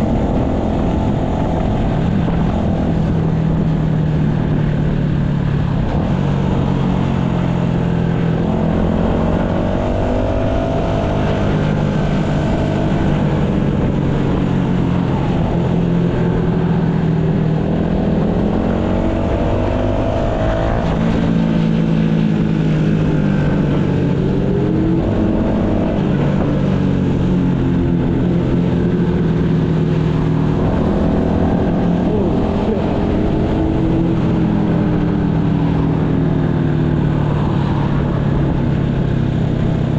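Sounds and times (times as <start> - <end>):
motorcycle engine revving: 0.0 - 39.9
steady low rumble: 9.8 - 39.9.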